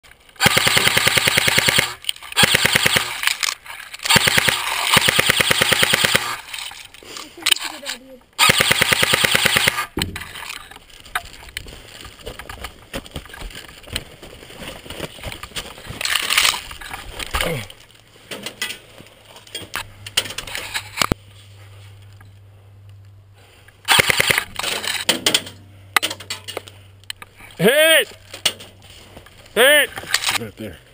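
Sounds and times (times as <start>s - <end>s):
airsoft rifle firing bursts: 0.4s - 3.3s, 4.0s - 6.4s, 8.4s - 9.9s, 23.9s - 24.5s
airsoft gun shots: 8.4s - 9.9s, 23.9s - 24.5s.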